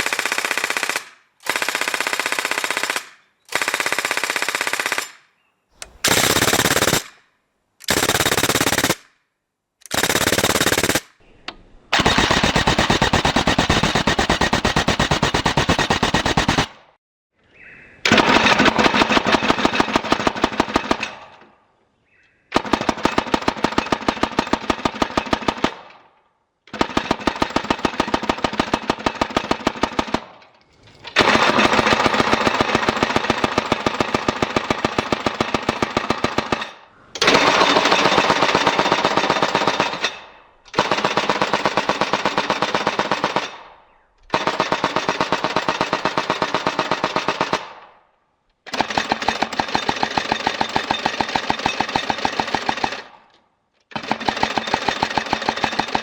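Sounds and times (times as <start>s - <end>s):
replica machine gun clacking: 26.7s - 43.6s, 48.7s - 56.0s.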